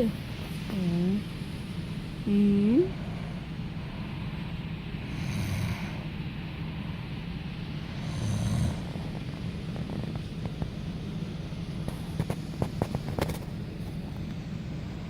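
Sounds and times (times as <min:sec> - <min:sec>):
man snoring: 0:05.1 - 0:06.0, 0:08.0 - 0:09.1.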